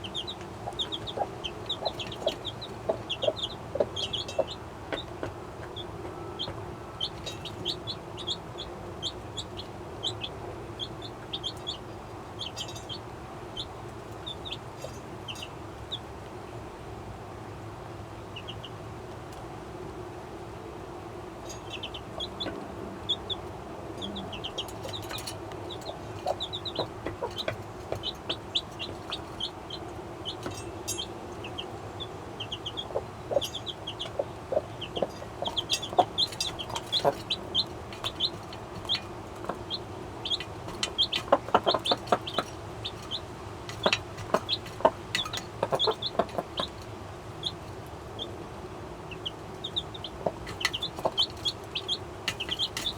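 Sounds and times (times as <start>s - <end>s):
hen clucking: 0.0s - 16.1s, 21.4s - 52.9s
chicks peeping: 0.0s - 16.5s, 18.2s - 19.4s, 21.4s - 52.9s
steady low hum: 0.0s - 52.9s.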